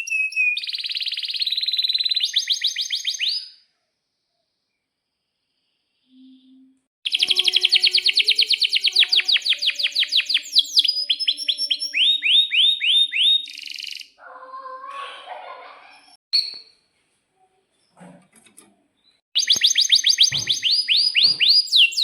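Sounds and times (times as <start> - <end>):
canary singing: 0.0 - 3.6, 6.0 - 14.2, 19.4 - 22.0.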